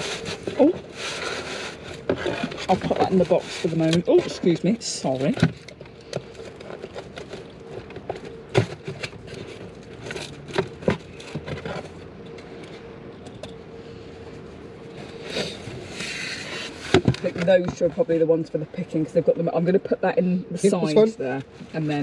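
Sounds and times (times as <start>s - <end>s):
cardboard boxes being handled: 0.0s - 12.0s.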